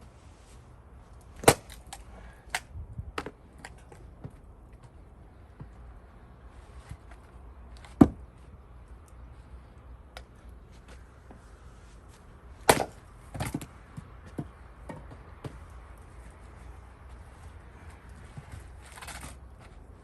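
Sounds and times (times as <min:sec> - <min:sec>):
axe chopping wood: 0:01.4 - 0:02.6, 0:07.8 - 0:08.3, 0:12.6 - 0:15.6.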